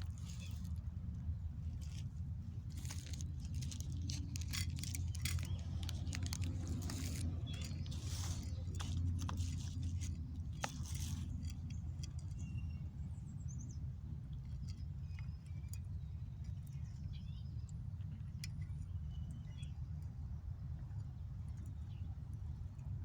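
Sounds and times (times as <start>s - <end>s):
rustling: 0.0s - 12.2s.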